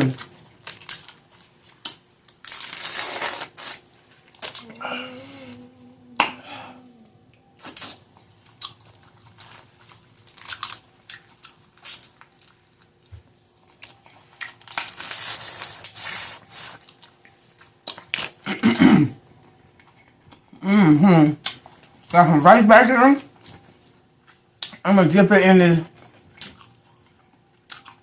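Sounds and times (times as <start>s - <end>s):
shells cracking and peeling: 0.3s - 3.4s, 9.4s - 12.6s, 14.4s - 15.9s
chewing: 6.2s - 14.8s, 26.0s - 28.0s.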